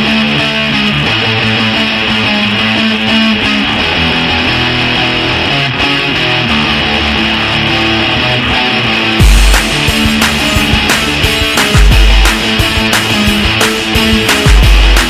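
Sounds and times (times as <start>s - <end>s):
background guitar music: 0.0s - 15.0s
deep low hit: 9.2s - 12.5s.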